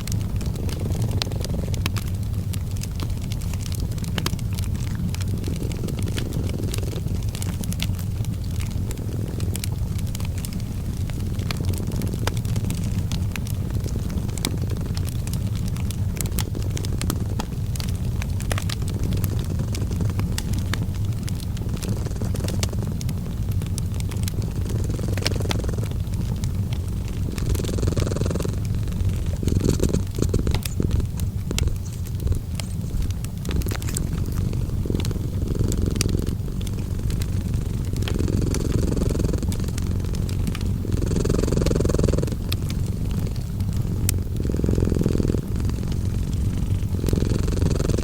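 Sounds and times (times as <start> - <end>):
cat purring: 0.0 - 48.0
wood fire crackling and popping: 0.0 - 48.0.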